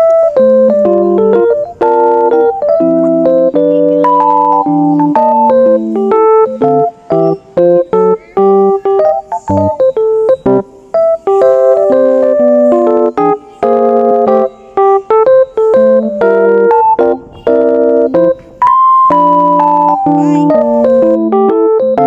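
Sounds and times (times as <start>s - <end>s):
keyboard music: 0.0s - 22.0s.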